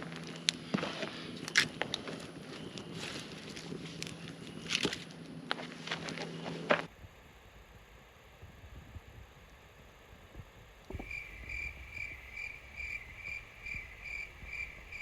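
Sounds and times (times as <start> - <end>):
insect chirping: 10.9 - 15.0.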